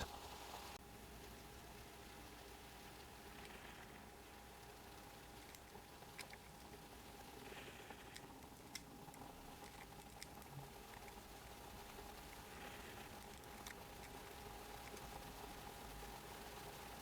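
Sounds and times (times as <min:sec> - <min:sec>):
steady low hum: 0:00.0 - 0:17.0
puzzle cube plastic clicking: 0:05.4 - 0:06.8, 0:08.0 - 0:11.3, 0:13.1 - 0:15.4.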